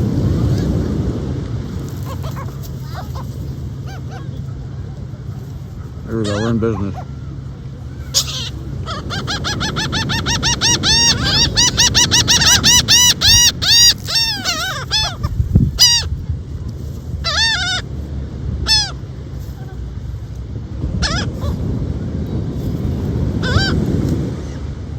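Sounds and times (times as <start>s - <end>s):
seagull calling: 1.9s - 16.2s, 17.2s - 17.9s, 18.6s - 20.0s, 20.8s - 21.8s, 23.3s - 24.8s
low rumble: 12.9s - 24.9s.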